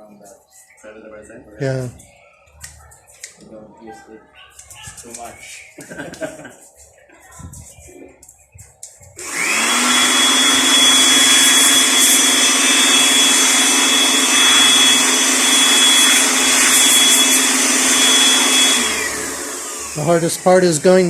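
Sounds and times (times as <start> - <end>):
vacuum cleaner running: 9.2 - 21.0.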